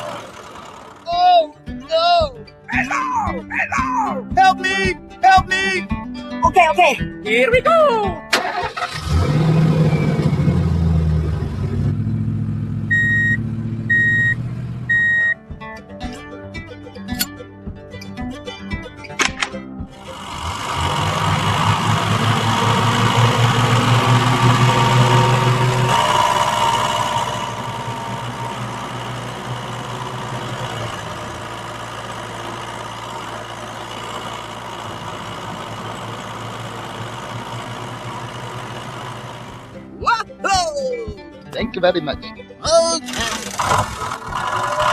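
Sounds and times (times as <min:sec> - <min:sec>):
vehicle engine running: 0:00.0 - 0:15.8, 0:19.3 - 0:40.0, 0:42.8 - 0:44.9
reversing beeps: 0:12.9 - 0:15.4.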